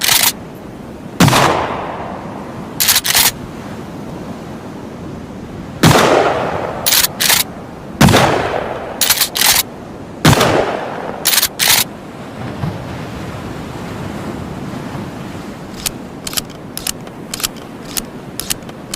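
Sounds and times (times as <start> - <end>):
shotgun pump racking clacks: 0.0 - 0.4, 2.8 - 3.3, 6.9 - 7.5, 9.0 - 9.6, 11.3 - 11.9, 15.8 - 18.9
shotgun shots: 1.2 - 2.0, 5.8 - 9.6, 10.2 - 11.9.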